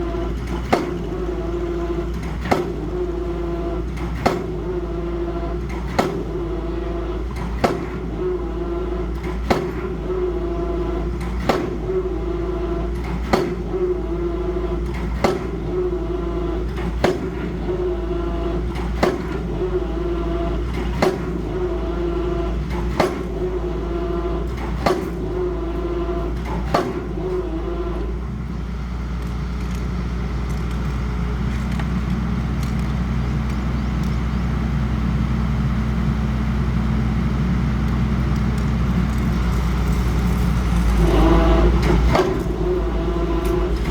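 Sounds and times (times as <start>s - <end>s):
engine running: 0.0s - 43.9s
machinery humming: 0.0s - 43.9s.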